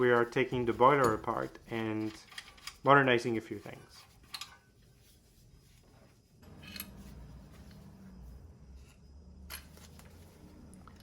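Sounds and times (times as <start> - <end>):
low steady hum: 4.0 - 11.0.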